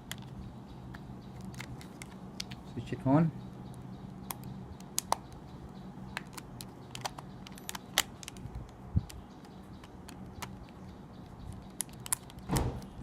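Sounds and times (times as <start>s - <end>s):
dull thump: 12.5s - 12.9s.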